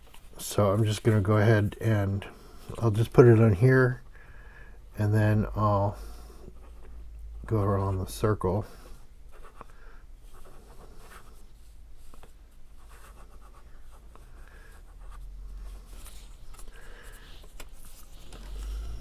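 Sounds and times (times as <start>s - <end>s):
paper rustling and scraping: 15.1s - 19.0s.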